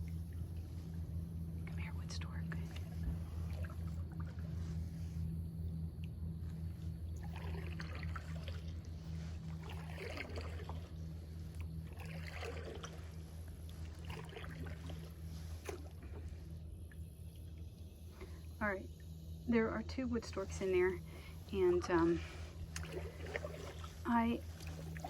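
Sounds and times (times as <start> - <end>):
steady low hum: 0.0 - 25.0
paddle splashing in water: 7.2 - 16.5, 21.9 - 25.0.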